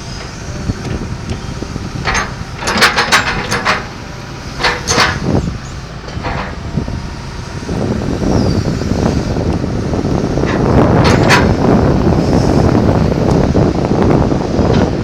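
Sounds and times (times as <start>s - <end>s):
metallic clanks and squeaks: 0.0s - 6.9s, 10.4s - 11.9s
excavator diesel engine running: 0.0s - 15.0s.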